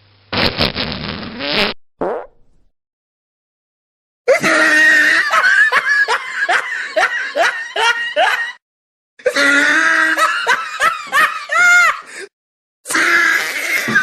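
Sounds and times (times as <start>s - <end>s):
high-pitched laugh: 4.3s - 8.6s, 9.2s - 12.0s.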